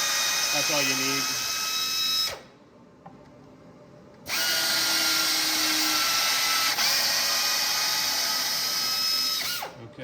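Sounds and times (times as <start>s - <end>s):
power tapping arm whining: 4.3s - 9.8s.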